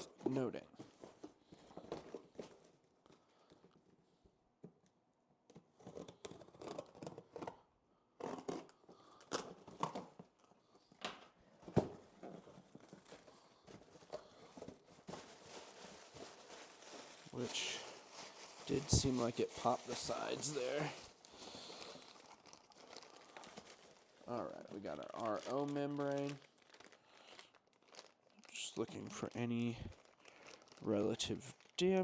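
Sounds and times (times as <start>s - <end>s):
cardboard tearing and rustling: 11.8s - 27.0s.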